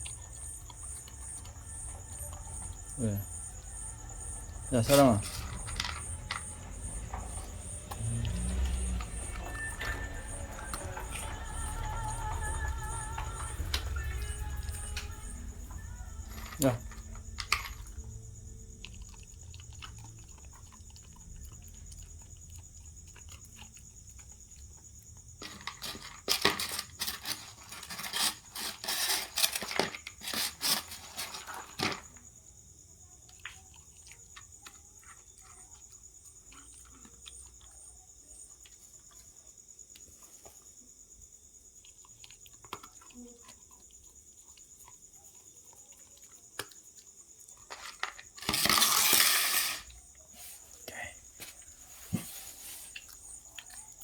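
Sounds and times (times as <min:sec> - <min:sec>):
dog crunching dry kibble: 0:00.0 - 0:32.2, 0:45.7 - 0:50.0.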